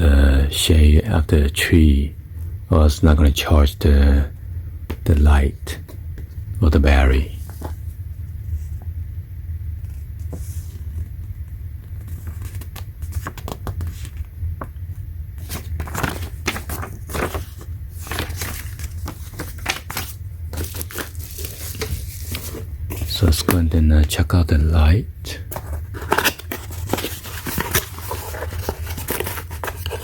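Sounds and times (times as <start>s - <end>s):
steady low hum: 0.0s - 30.0s
packaging crinkling and scraping: 15.4s - 24.2s, 25.4s - 30.0s.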